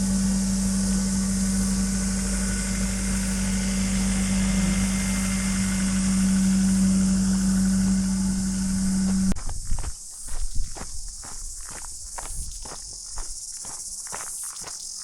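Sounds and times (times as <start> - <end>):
high hiss: 0.0 - 9.4
water pump humming: 0.0 - 10.4.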